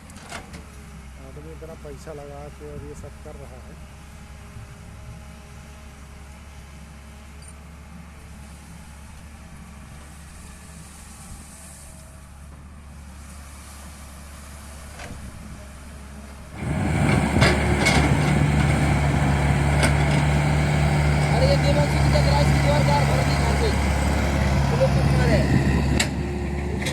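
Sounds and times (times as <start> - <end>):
excavator diesel engine: 14.4 - 26.9
machine clanks and rattles: 16.6 - 26.9.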